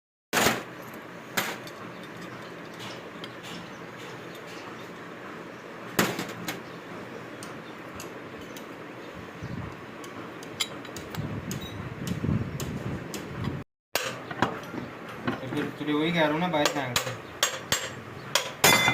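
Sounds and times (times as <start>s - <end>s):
metal tools clinking on workbench: 0.7s - 4.8s, 16.6s - 18.9s.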